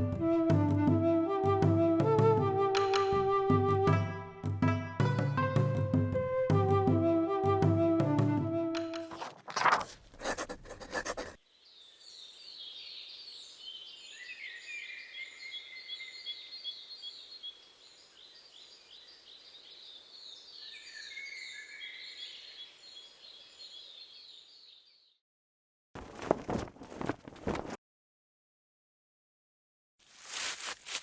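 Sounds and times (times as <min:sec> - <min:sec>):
birds chirping and trilling: 0:11.6 - 0:25.1.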